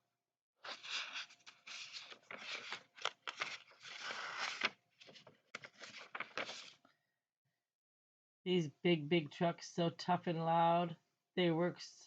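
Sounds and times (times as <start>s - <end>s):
paper pages rustling: 0.6s - 6.8s.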